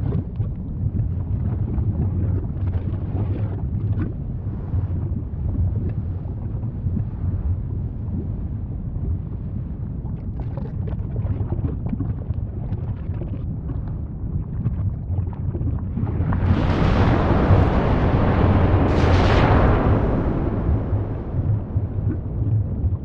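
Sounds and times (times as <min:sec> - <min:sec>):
volcano rumbling: 0:00.0 - 0:23.0
crackles: 0:14.6 - 0:23.0.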